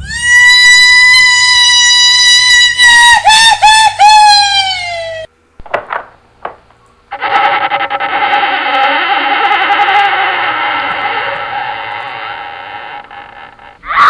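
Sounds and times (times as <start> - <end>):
woman screaming: 0.0 - 5.3.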